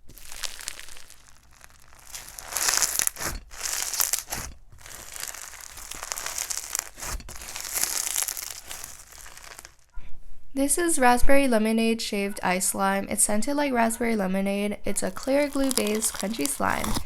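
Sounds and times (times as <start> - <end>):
crunchy slime being squished: 0.0 - 9.9, 14.9 - 17.0.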